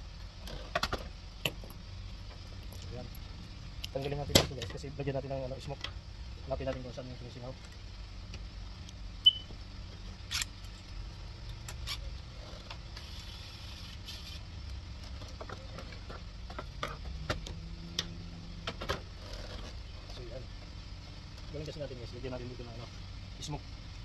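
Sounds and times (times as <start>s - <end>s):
steady low hum: 0.0s - 24.0s
tools clicking and knocking: 0.8s - 3.2s, 3.8s - 4.8s.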